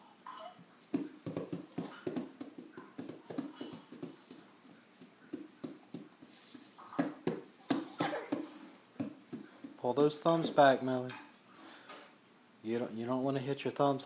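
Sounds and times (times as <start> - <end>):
hands striking a drum: 0.9 - 4.4, 7.0 - 9.8.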